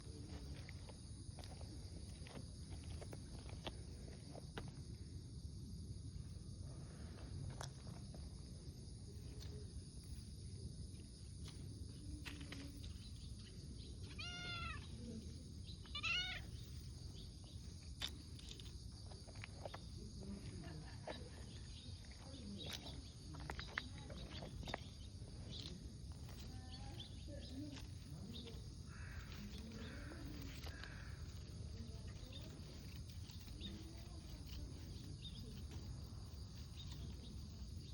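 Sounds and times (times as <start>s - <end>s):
cat meowing: 14.1s - 14.9s, 15.9s - 16.5s.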